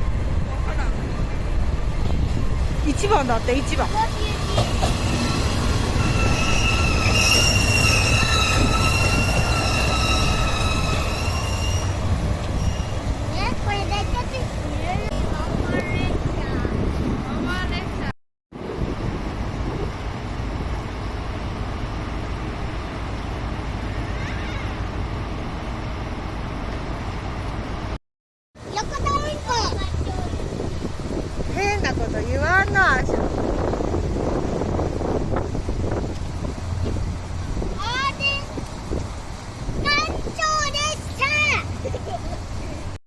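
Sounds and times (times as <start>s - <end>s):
wind buffeting microphone: 0.0s - 22.9s, 28.6s - 43.0s
train rumbling: 0.0s - 28.0s, 28.6s - 43.0s
train wheels squealing on rails: 3.7s - 14.2s.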